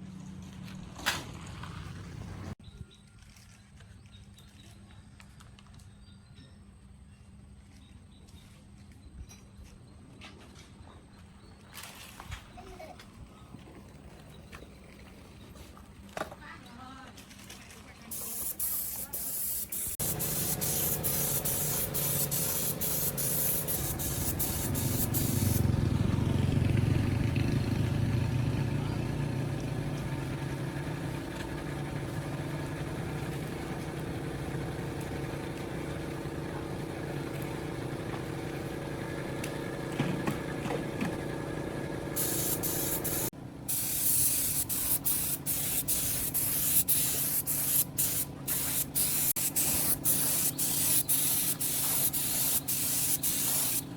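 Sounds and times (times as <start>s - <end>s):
spray hissing: 18.1s - 39.8s, 42.1s - 53.9s
motor running: 18.2s - 53.9s.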